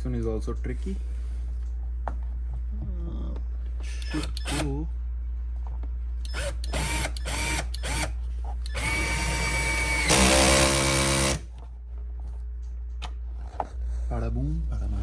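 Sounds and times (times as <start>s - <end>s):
power drill driving fastener: 4.0s - 4.7s, 6.3s - 8.1s, 8.7s - 11.5s.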